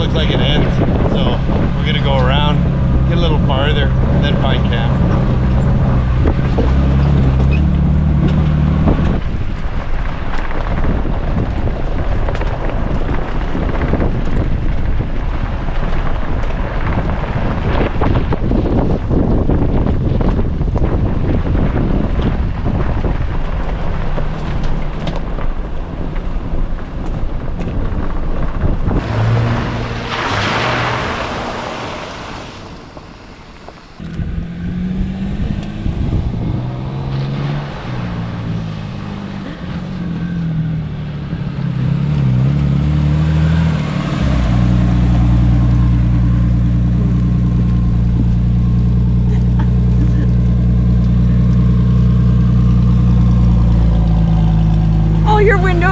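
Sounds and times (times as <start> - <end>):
rough road rumble: 0.0 - 55.9
wind: 0.0 - 55.9
car engine running: 23.6 - 34.4.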